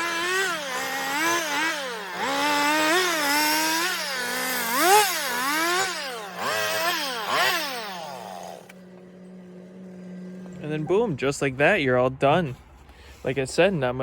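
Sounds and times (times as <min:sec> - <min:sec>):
chainsaw revving while carving wood: 0:00.0 - 0:10.8.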